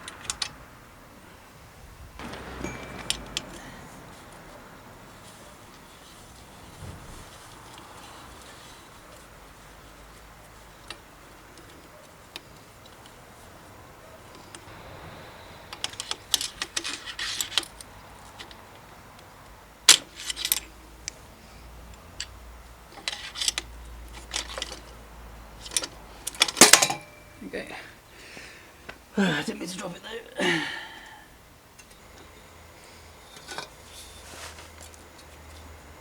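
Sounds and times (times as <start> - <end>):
metal tools clinking: 2.2 - 6.8, 15.7 - 18.5, 19.9 - 20.7, 23.0 - 25.0, 25.6 - 27.6.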